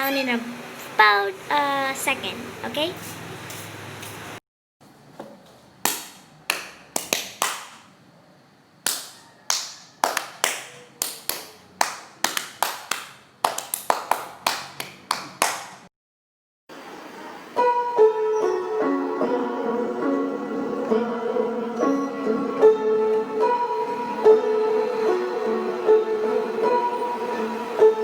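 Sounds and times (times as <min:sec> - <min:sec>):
plucked-string melody: 0:17.6 - 0:28.0.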